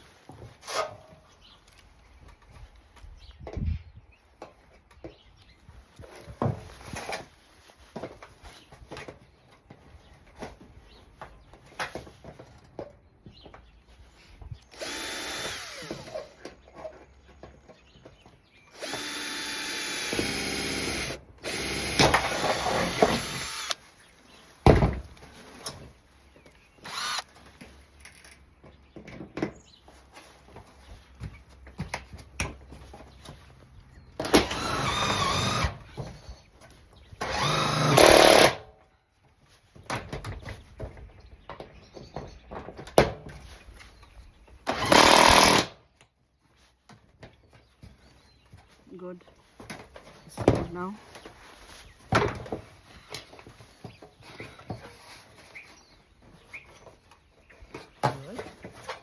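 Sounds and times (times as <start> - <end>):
power drill running: 14.7 - 16.2, 18.8 - 23.8, 26.8 - 27.3, 34.2 - 35.8, 37.2 - 38.6, 44.7 - 45.7.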